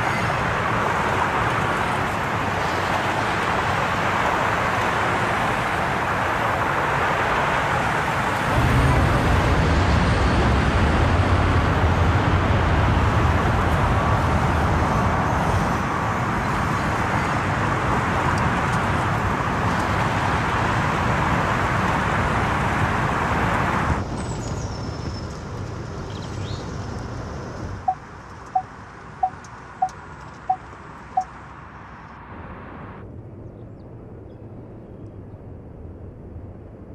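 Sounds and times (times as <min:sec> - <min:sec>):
vehicle road and wind noise: 0:00.0 - 0:36.9
short beeps: 0:28.6 - 0:30.6.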